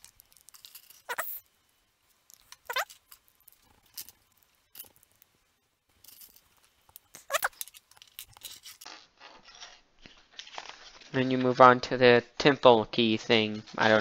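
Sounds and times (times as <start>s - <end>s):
plastic pieces clicking: 6.9s - 8.9s.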